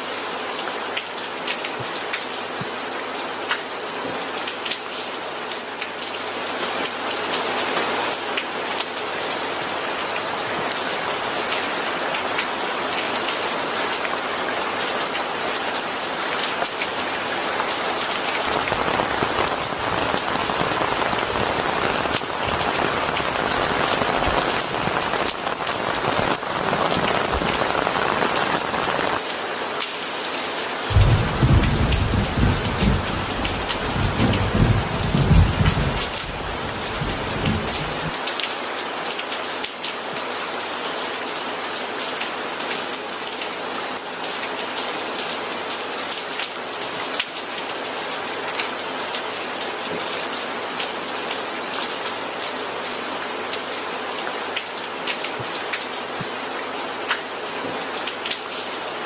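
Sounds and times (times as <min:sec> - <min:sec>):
heavy rain spattering: 0:05.8 - 0:40.3
low rumble of thunder: 0:30.9 - 0:38.2.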